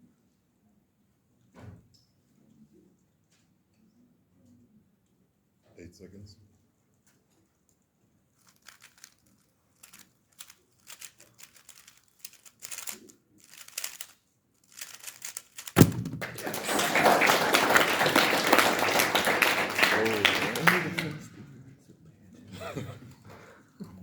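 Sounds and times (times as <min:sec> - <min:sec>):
faint clicks and rustles: 0:06.9 - 0:15.9
sudden thump: 0:15.8 - 0:16.4
crowd applauding: 0:15.8 - 0:21.5.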